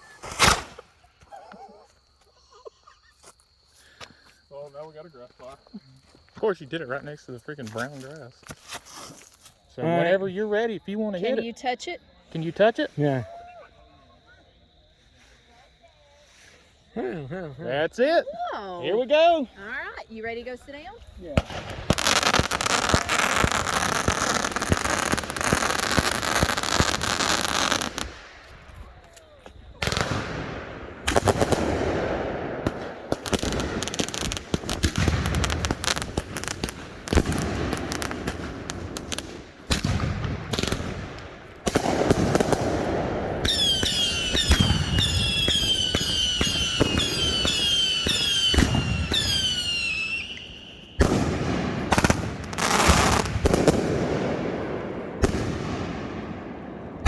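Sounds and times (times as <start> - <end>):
firework bangs and crackling: 0.0 - 1.0, 20.4 - 57.0
firework whistles: 0.0 - 1.1, 21.3 - 28.6, 41.7 - 54.0.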